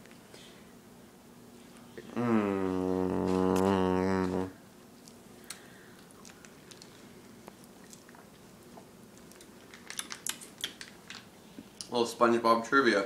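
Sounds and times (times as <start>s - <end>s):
mouth clicks and wet smacks: 5.0s - 11.2s.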